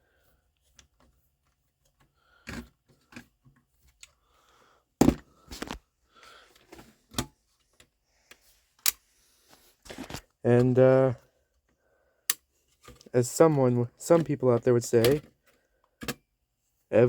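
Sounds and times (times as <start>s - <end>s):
scraping of plastic and metal parts: 0.8s - 4.1s, 9.5s - 10.8s, 12.6s - 16.2s.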